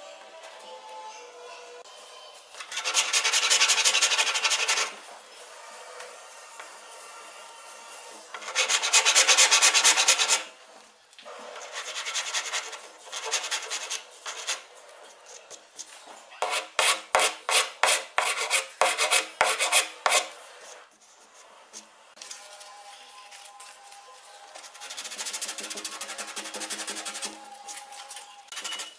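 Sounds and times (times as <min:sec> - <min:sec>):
sandpaper rubbing on wood: 0:24.5 - 0:27.9.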